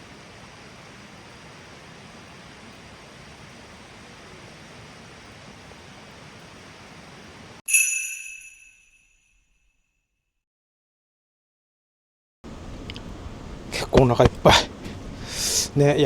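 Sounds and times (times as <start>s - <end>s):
background hiss: 0.0s - 9.0s, 12.5s - 16.0s
bright chime: 7.7s - 9.6s.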